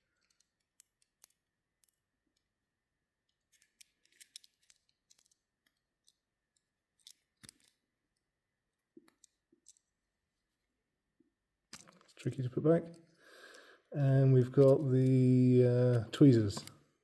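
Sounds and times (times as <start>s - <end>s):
small clicks and scrapes of pocketknife: 0.0s - 2.4s, 3.3s - 8.2s, 9.0s - 10.0s.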